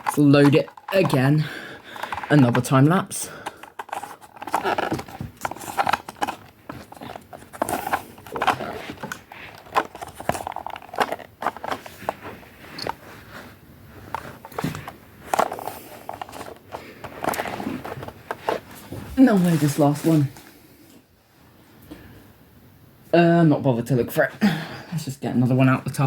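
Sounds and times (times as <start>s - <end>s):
plastic clicks and scrapes: 0.0s - 13.0s, 14.0s - 20.2s
handling rustle: 0.0s - 20.7s.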